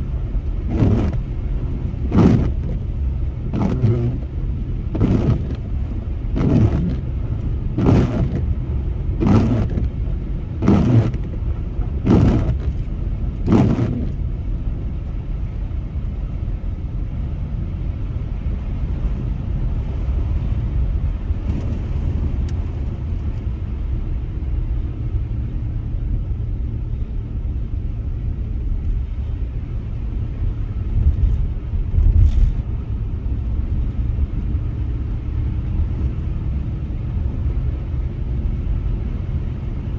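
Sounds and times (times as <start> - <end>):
car road and engine rumble: 0.0 - 39.9.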